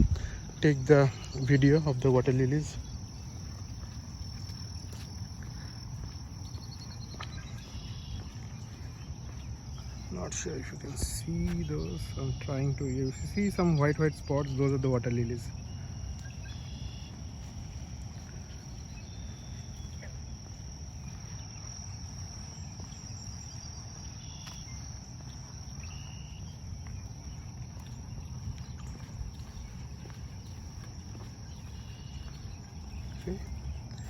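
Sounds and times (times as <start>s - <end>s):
low rumble: 0.0s - 12.2s
crickets droning: 0.0s - 34.0s
bird chirps: 0.2s - 3.9s, 5.9s - 17.2s.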